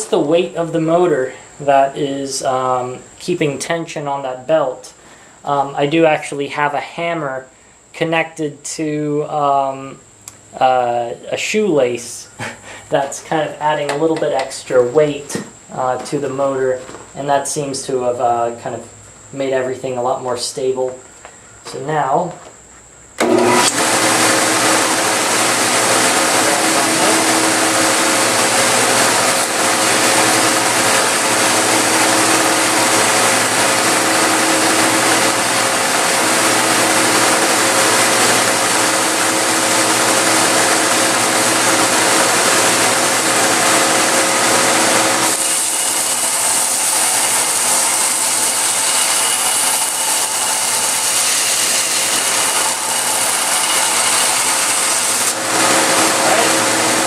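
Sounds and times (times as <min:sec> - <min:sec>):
belt grinder motor humming: 0:23.2 - 0:57.0.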